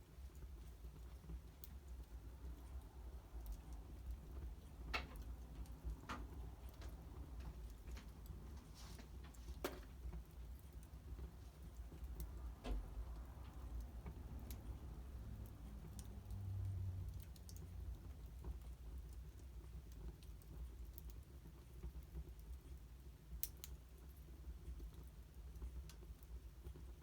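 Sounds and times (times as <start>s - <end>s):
low rumble of fire: 0.0s - 27.0s
wood fire crackling: 0.0s - 27.0s
fire pops: 3.4s - 14.7s.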